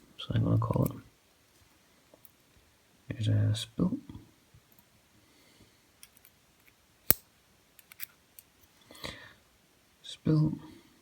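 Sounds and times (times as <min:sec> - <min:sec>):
small metal parts clicking: 0:07.8 - 0:08.5.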